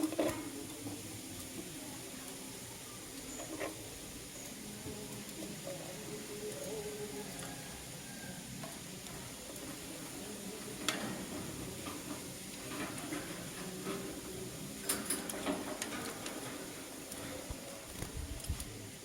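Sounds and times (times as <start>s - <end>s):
birds rustling and crackling: 0.0s - 19.0s.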